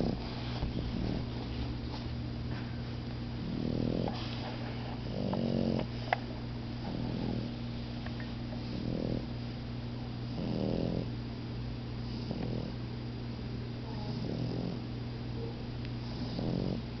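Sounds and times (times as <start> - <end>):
dogs snoring: 0.0 - 2.0, 3.4 - 7.9, 8.6 - 9.4, 10.2 - 11.1, 12.0 - 12.8, 13.8 - 14.9, 16.0 - 17.0
steady low hum: 0.0 - 17.0.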